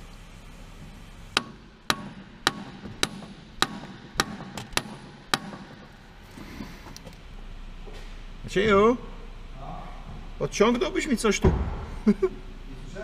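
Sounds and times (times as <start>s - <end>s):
hammer striking metal: 1.4s - 5.8s.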